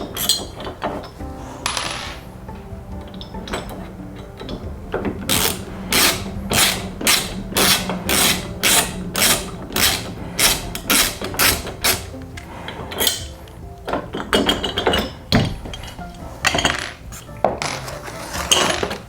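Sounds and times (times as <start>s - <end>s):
screwdriver rasping on screws: 5.2s - 13.4s.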